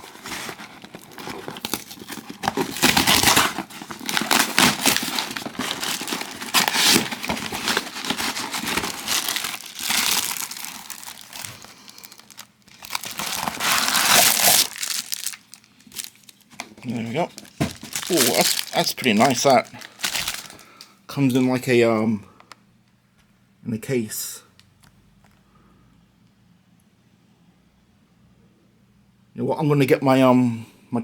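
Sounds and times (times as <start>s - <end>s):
cardboard box being opened: 0.0s - 20.6s
packing crinkling and tearing: 0.0s - 20.9s.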